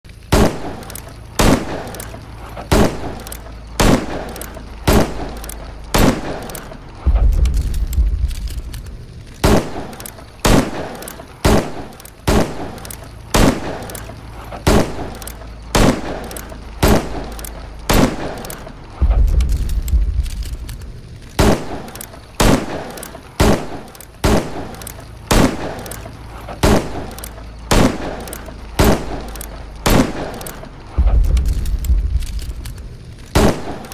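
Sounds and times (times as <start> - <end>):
revolver gunshots: 0.2 - 33.9
deep low rumble: 1.2 - 9.9, 16.7 - 21.4, 28.5 - 33.4.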